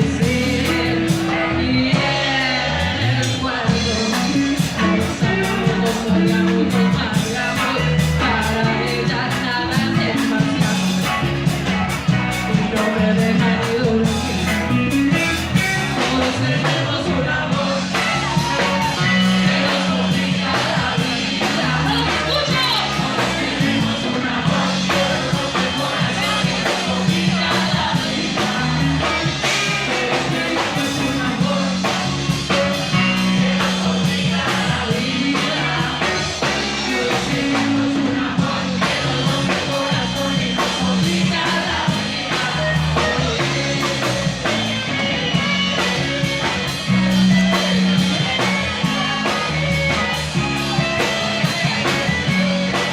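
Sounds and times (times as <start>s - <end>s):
lead singer singing: 0.0s - 52.9s
rock band playing: 0.0s - 52.9s.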